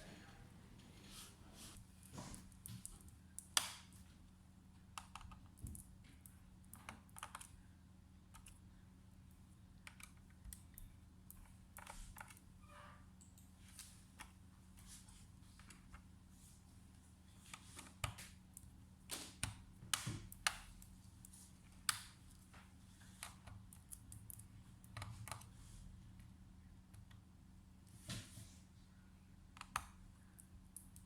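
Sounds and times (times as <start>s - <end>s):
low steady hum: 0.0s - 31.0s
hands clicking and tapping laptop: 4.9s - 7.6s, 17.5s - 25.5s, 29.5s - 31.0s.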